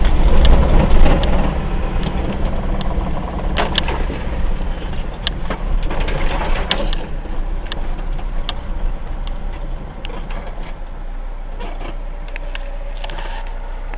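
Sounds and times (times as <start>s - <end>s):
sharp knocks and rattles: 0.0s - 10.8s
vehicle engine rumbling: 0.0s - 13.9s.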